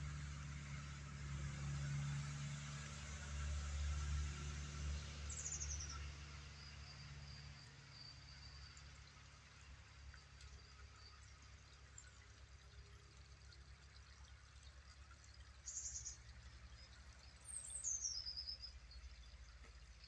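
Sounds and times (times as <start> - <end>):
small bird chirping trill: 5.3 - 6.0, 15.0 - 20.0.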